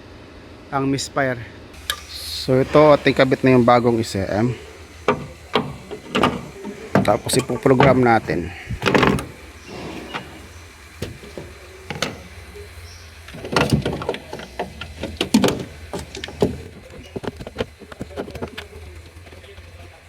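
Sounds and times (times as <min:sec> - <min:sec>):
low steady hum: 0:00.0 - 0:20.0
clicks knocks and rattles of parts: 0:05.0 - 0:12.4, 0:13.3 - 0:19.8.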